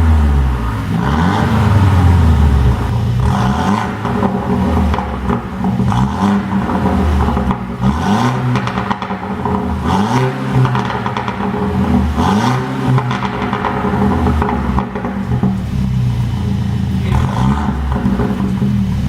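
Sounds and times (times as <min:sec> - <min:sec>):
car engine revving: 0:00.0 - 0:19.0
exhaust pops and crackles: 0:00.0 - 0:19.0.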